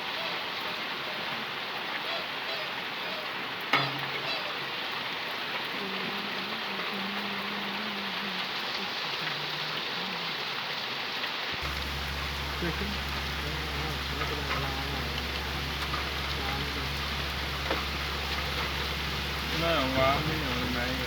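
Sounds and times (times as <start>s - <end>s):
steady rain falling: 0.0s - 21.0s
faint low hum: 11.6s - 21.0s.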